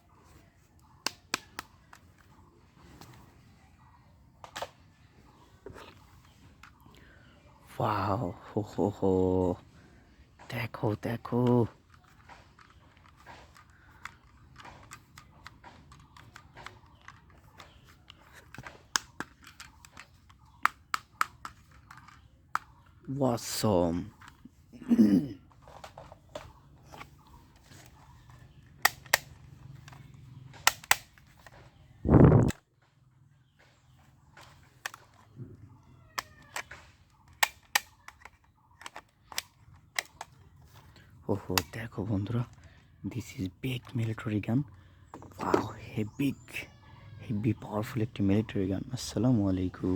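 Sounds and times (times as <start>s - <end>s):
sharp plastic snaps: 0.7s - 3.2s, 11.3s - 23.0s, 25.6s - 32.7s, 33.6s - 42.8s
toy guns clicking and clacking: 10.7s - 22.7s, 25.6s - 31.7s, 36.1s - 44.2s.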